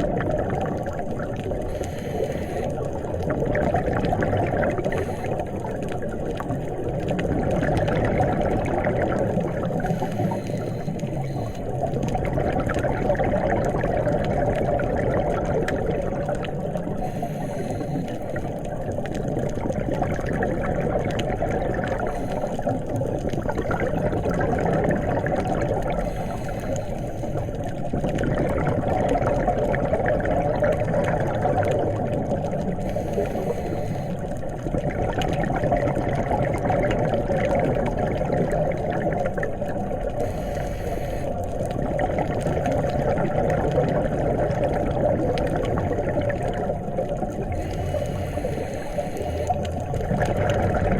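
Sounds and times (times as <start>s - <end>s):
underwater rushing and bubbles: 0.0s - 50.9s.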